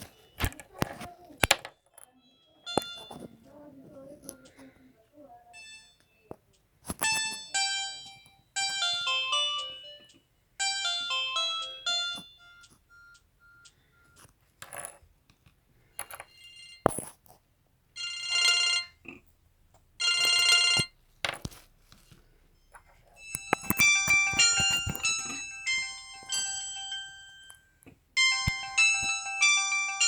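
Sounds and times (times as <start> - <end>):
clicks: 0.0 - 2.1, 20.2 - 29.6
buzzy phone ringing: 0.0 - 14.3, 16.0 - 16.9, 18.0 - 19.0, 20.0 - 21.0, 22.5 - 30.0
phone beeping: 0.0 - 14.3, 15.9 - 17.0, 18.0 - 19.2, 20.0 - 21.0, 22.5 - 30.0
phone ringtone melodies: 2.1 - 4.8, 5.5 - 6.4, 7.0 - 14.2, 16.3 - 16.8, 18.0 - 19.0, 20.0 - 21.0, 22.6 - 30.0.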